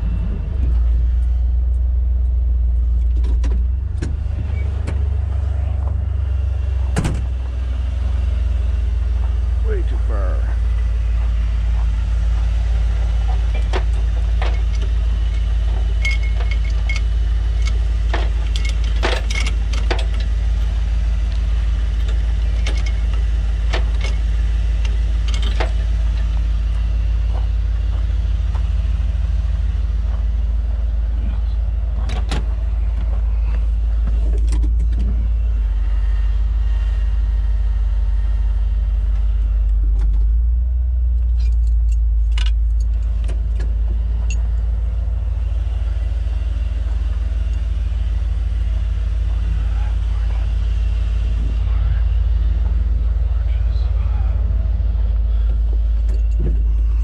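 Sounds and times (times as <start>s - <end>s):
truck engine idling: 0.0s - 57.0s
sharp metallic clicks and clanks: 13.0s - 26.4s, 41.2s - 44.6s.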